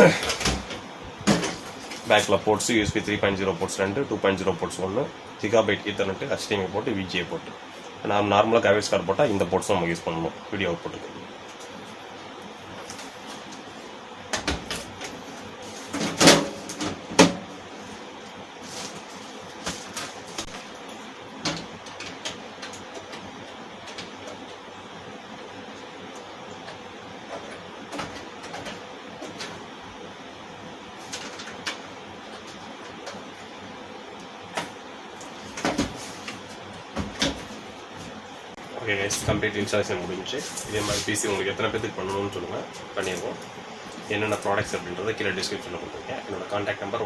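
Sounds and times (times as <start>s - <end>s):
steady background hiss: 0.0s - 47.0s
computer hardware clicks and knocks: 21.4s - 24.6s, 26.1s - 29.6s.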